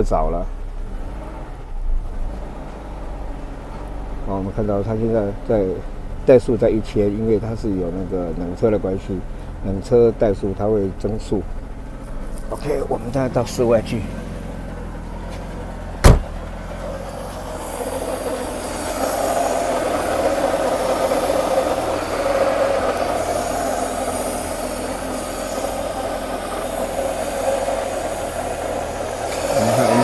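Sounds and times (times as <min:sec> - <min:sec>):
car engine idling: 0:00.0 - 0:30.0
sharp thump: 0:15.3 - 0:16.5.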